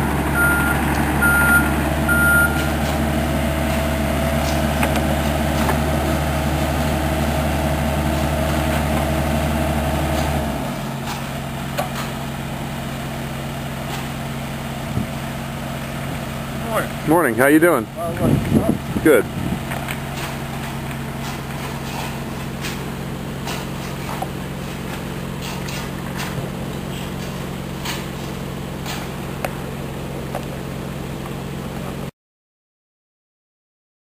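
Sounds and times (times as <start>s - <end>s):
truck reversing alarm beeps: 0.0s - 2.9s
truck engine running: 0.0s - 32.1s.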